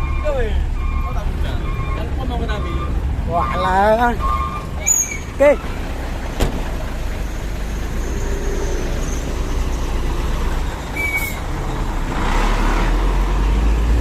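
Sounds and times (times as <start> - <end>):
brief high squeak: 4.8 - 5.3, 11.0 - 11.4
vehicle engine running: 5.3 - 12.0.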